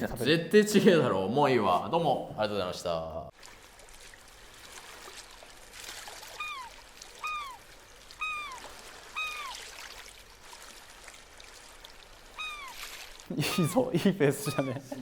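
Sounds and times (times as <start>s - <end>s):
short high calls: 6.3s - 7.6s, 8.2s - 9.7s, 12.3s - 13.0s.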